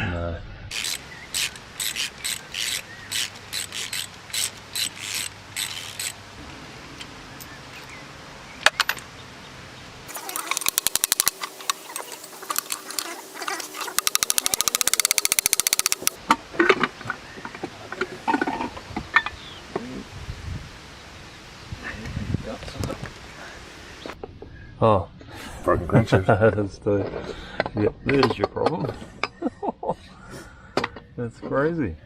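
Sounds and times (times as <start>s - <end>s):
ratchet spanner clicking: 0.7s - 6.2s, 10.1s - 13.1s, 13.7s - 16.2s
sharp metallic taps: 14.0s - 16.2s.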